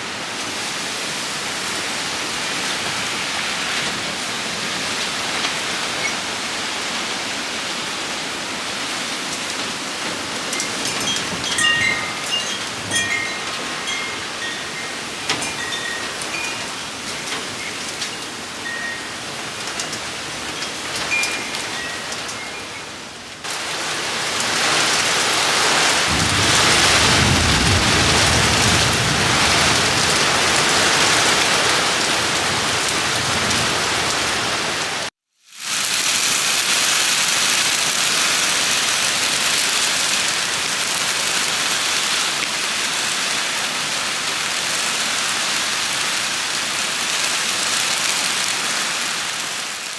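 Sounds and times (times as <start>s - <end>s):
heavy rain pouring: 0.0s - 49.9s
thunder rumbling: 26.1s - 34.6s.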